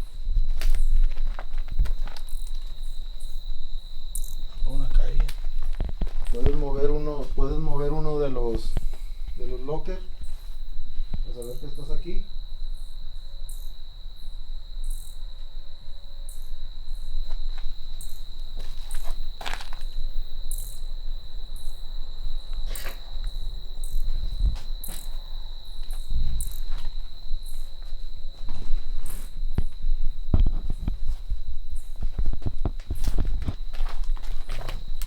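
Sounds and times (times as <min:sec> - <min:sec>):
insects droning and chirping: 0:00.0 - 0:35.0.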